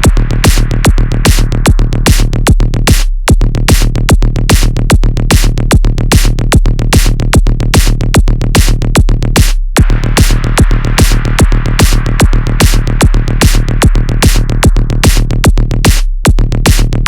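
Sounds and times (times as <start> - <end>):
electronic dance music: 0.0 - 2.3, 9.4 - 16.0
deep bass: 0.0 - 17.0.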